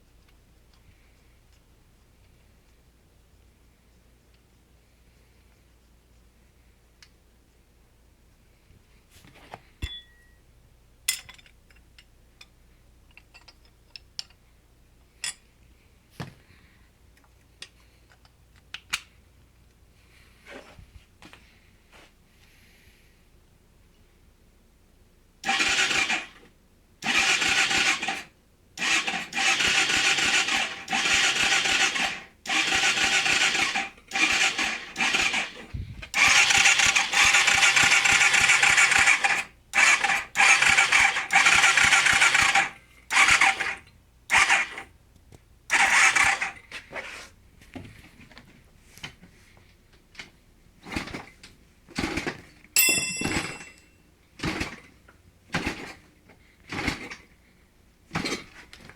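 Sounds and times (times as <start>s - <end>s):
dirt bike engine cranking: 25.4s - 26.4s, 27.0s - 44.9s, 45.7s - 46.6s, 52.1s - 54.9s.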